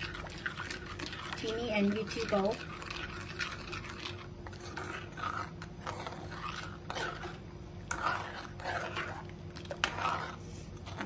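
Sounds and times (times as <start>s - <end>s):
spoon scraping a pan: 0.0s - 11.0s
steady low hum: 0.0s - 11.0s.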